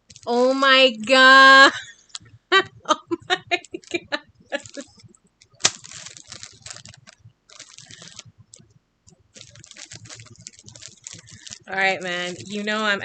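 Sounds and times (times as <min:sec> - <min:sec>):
packaging crinkling and rustling: 0:03.7 - 0:08.6, 0:09.4 - 0:13.0.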